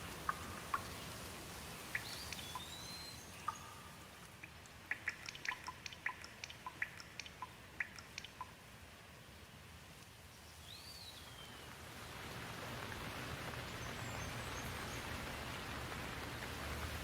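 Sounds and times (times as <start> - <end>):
water drops plinking: 0.0 - 1.1, 1.9 - 8.6
light rain: 0.0 - 17.0.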